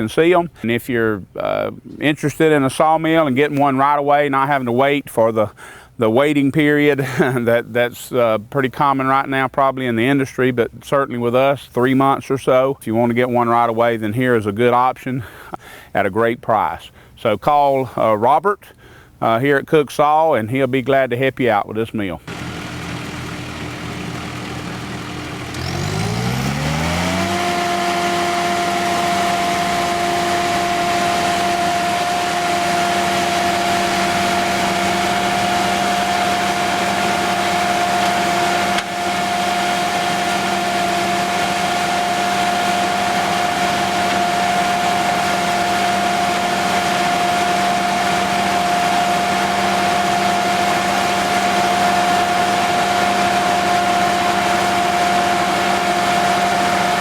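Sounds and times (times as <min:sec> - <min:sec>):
diesel engine idling and revving: 0:22.3 - 0:57.0.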